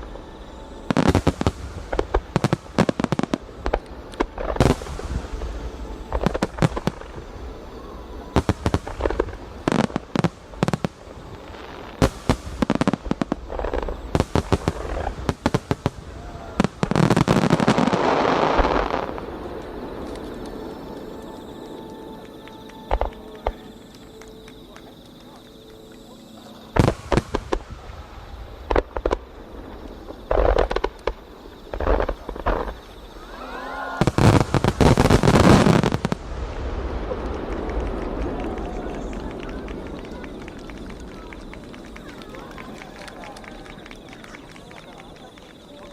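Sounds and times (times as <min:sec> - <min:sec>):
fireworks exploding: 0:00.0 - 0:45.9.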